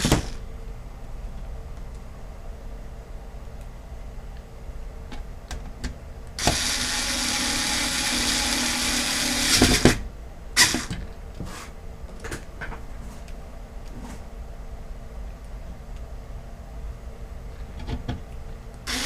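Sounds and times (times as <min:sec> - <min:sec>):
electric screwdriver running: 0:06.4 - 0:10.0.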